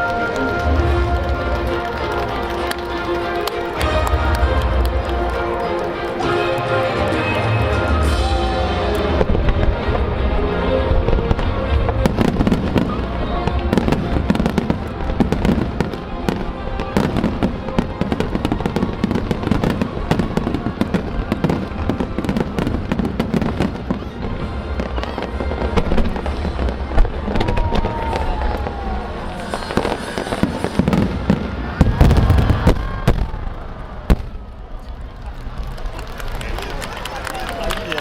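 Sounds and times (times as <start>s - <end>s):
music playing: 0.0s - 32.7s
fireworks bursting: 7.6s - 34.8s.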